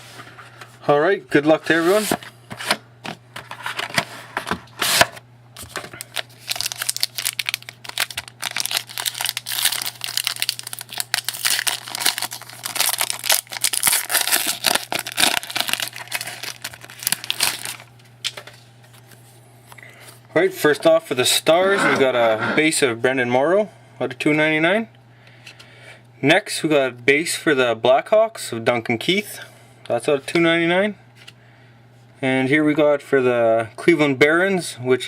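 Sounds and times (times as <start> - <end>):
cards and wrapping rustling: 3.4 - 19.8
packaging torn and crinkled: 5.7 - 18.5.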